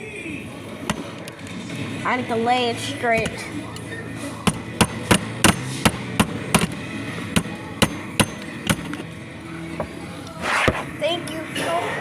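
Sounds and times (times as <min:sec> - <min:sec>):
hammer tapping: 0:00.9 - 0:01.4, 0:03.1 - 0:03.5, 0:04.5 - 0:06.8, 0:07.4 - 0:09.0.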